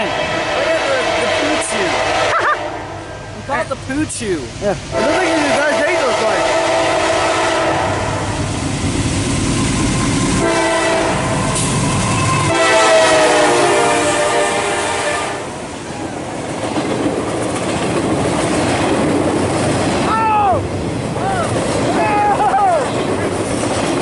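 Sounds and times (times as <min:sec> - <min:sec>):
train horn blowing: 0:00.0 - 0:03.1, 0:04.9 - 0:08.4, 0:10.0 - 0:15.6
freight cars rumbling and clattering: 0:16.0 - 0:24.0.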